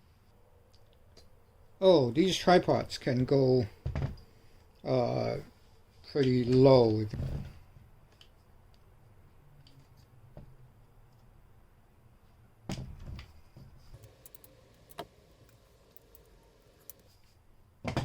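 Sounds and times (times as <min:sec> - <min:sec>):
tripod legs clicking and knocking: 0:14.0 - 0:17.1.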